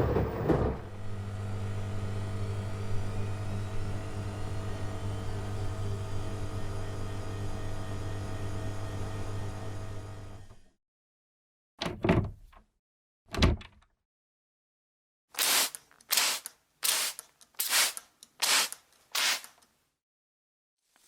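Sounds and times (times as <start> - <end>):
scraping or brushing strokes: 15.4 - 19.6.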